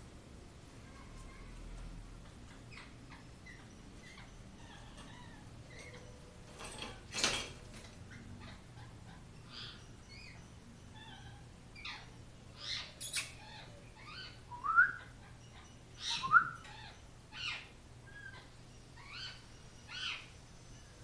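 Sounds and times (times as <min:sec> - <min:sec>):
parrot chirps and squawks: 0:02.7 - 0:06.1, 0:08.1 - 0:20.3.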